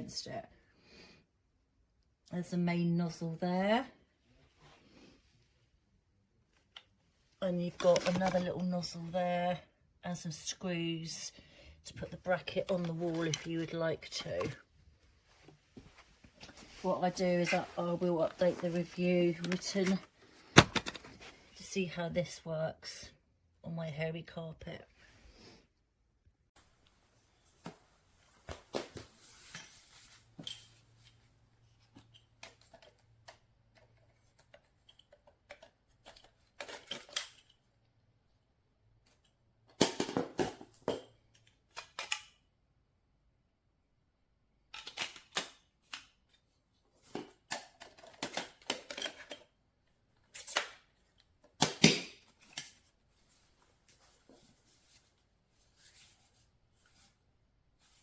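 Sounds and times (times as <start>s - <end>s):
plastic parts clicking and rattling: 18.3s - 21.3s, 31.9s - 37.7s, 39.1s - 42.4s, 44.7s - 46.4s, 47.0s - 49.6s.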